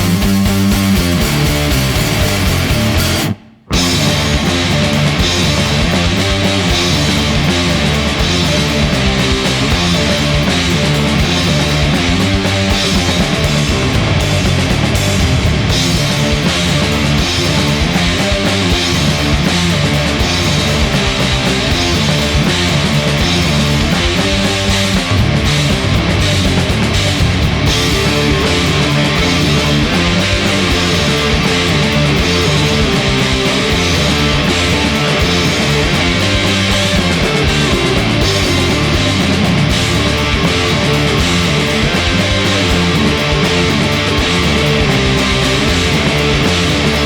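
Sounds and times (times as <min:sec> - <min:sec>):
bass guitar: 0:00.0 - 0:47.0
distorted electric guitars: 0:00.0 - 0:47.0
drums: 0:00.0 - 0:47.0.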